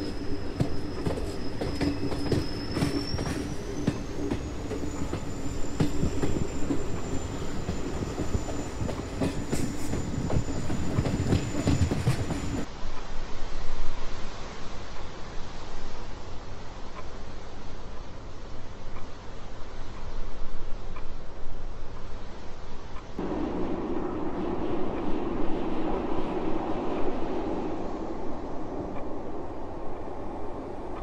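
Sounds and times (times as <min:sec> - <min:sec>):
high squeal: 0:00.0 - 0:12.6
train rumbling on rails: 0:00.0 - 0:16.7, 0:22.0 - 0:31.0
steady hiss: 0:00.0 - 0:31.0.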